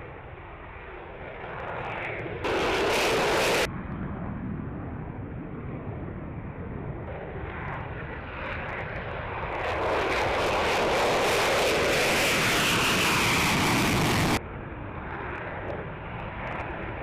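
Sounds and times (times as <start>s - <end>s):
jet engines roaring: 0.0s - 17.0s.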